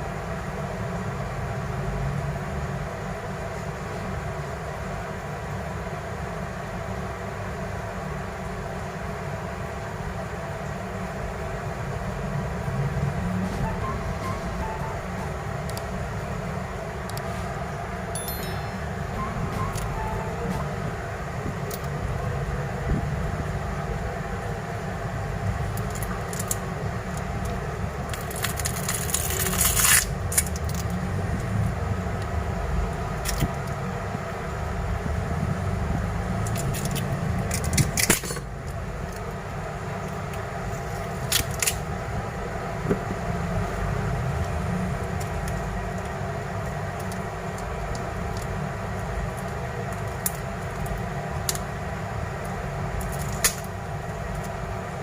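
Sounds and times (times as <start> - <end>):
steady low hum: 0.0 - 29.2.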